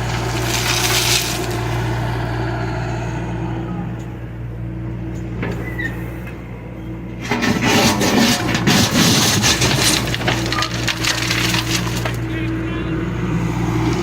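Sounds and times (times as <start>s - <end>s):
bucket crunching and scraping: 0.0s - 2.0s, 7.2s - 12.6s
excavator diesel engine running: 0.0s - 14.0s.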